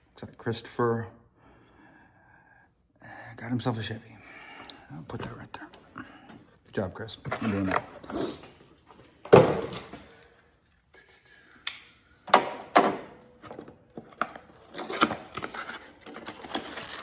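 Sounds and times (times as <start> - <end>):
packaging thunks and rustles: 7.2 - 10.3, 12.3 - 17.0.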